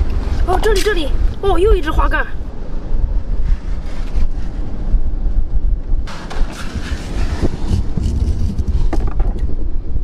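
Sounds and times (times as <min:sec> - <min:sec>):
wind buffeting microphone: 0:00.0 - 0:10.0
rustling and scraping: 0:03.3 - 0:05.1, 0:06.1 - 0:09.5.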